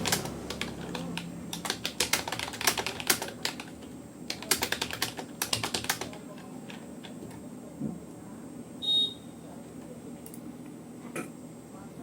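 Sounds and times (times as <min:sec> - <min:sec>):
keyboard typing: 0:00.0 - 0:07.4.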